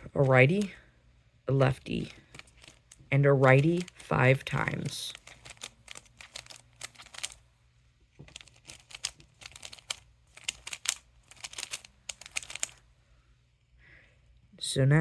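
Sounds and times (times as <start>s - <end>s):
puzzle cube plastic clicks: 1.9s - 7.4s, 8.3s - 12.8s.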